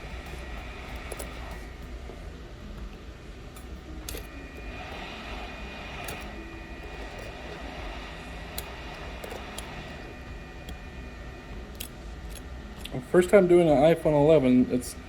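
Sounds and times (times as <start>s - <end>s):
electric blower fan whirring: 0.0s - 15.0s
tools clicking against phone: 0.1s - 2.0s, 2.6s - 11.0s, 11.6s - 13.0s.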